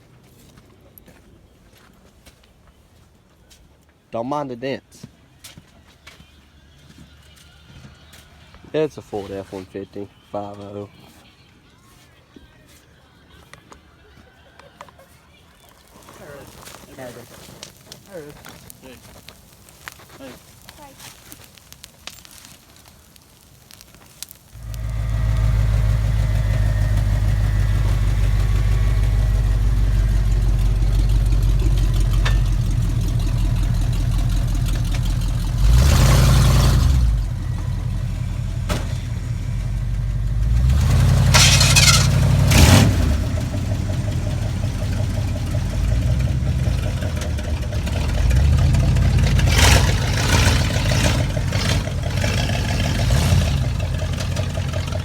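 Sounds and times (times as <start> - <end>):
truck engine idling and revving: 24.6 - 55.0.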